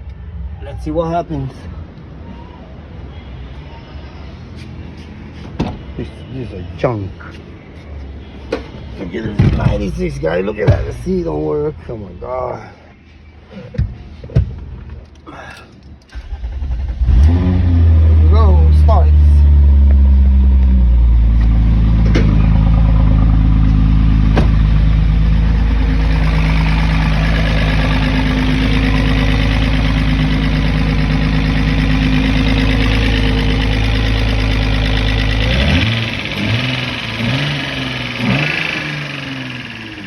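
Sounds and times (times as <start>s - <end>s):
car engine idling: 16.1s - 40.0s.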